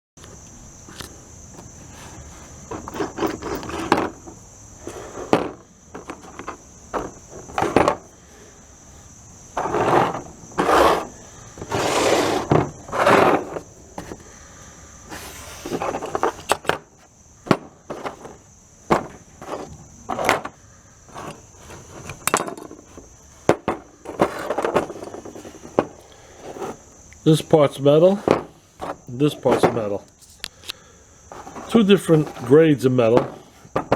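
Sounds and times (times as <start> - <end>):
faint high-pitched hiss: 0.2 - 33.9
metal toy cars scraping and clicking: 2.0 - 8.0, 9.6 - 14.2, 19.4 - 23.1, 24.0 - 26.8.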